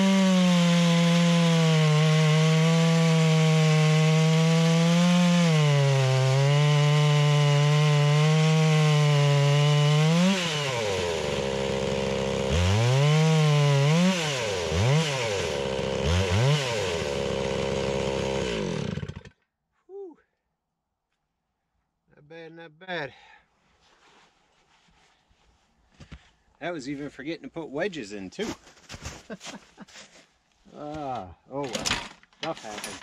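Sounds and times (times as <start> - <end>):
chainsaw cutting wood: 0.0 - 19.4.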